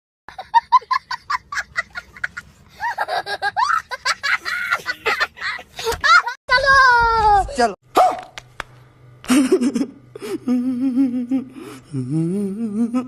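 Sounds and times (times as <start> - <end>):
person laughing: 0.3 - 6.4, 9.2 - 13.0.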